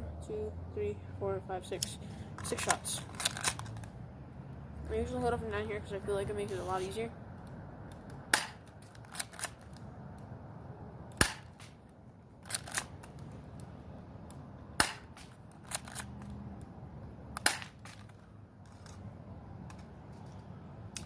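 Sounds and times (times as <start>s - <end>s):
airsoft pistol shots: 8.3s - 8.7s, 11.2s - 11.8s, 14.8s - 15.3s, 17.4s - 17.9s.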